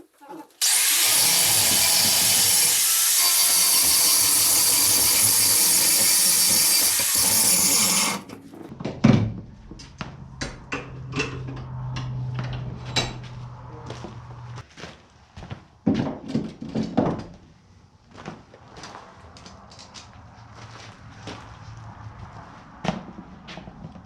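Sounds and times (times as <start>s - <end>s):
angle grinder grinding steel: 0.6s - 8.4s.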